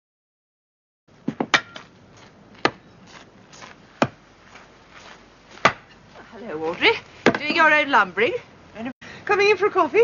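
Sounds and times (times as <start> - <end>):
axe chopping wood: 1.2 - 2.0, 2.6 - 2.9, 4.0 - 4.2, 5.6 - 6.0, 7.2 - 7.6.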